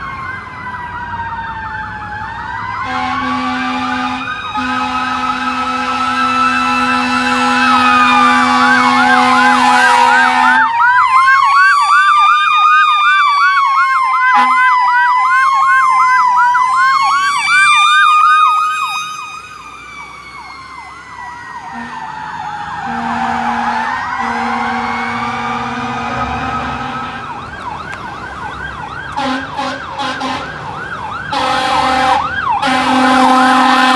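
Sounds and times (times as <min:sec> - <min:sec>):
fire engine sirens wailing: 0:00.0 - 0:33.9
long horn blasts: 0:02.8 - 0:10.7, 0:14.3 - 0:14.7, 0:22.8 - 0:27.4, 0:29.1 - 0:30.6, 0:31.3 - 0:33.9.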